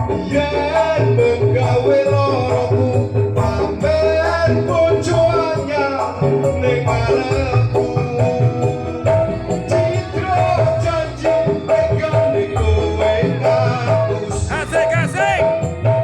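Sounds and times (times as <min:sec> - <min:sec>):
pop band music: 0:00.0 - 0:16.0
held melody line: 0:14.4 - 0:15.5
steady drum beat: 0:14.4 - 0:15.6.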